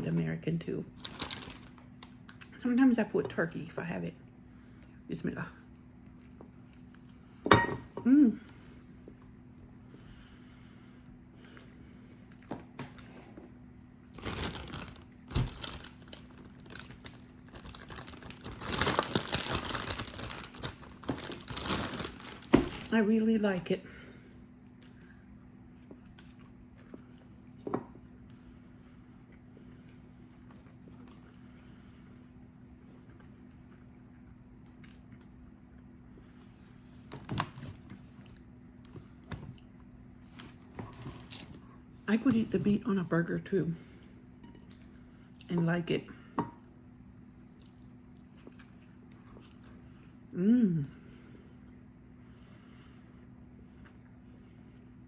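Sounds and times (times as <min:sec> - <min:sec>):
steady low hum: 0:00.0 - 0:55.0
chewing sandwich: 0:32.8 - 0:36.0, 0:47.4 - 0:50.1
person chewing: 0:47.5 - 0:49.8.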